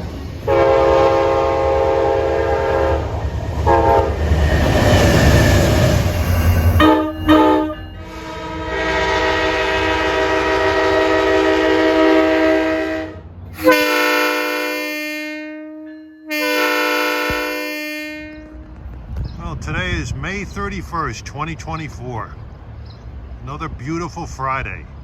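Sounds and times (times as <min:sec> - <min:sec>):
passing train rumble: 0:00.0 - 0:25.0
train air horn blasts: 0:00.4 - 0:04.2, 0:06.6 - 0:18.8.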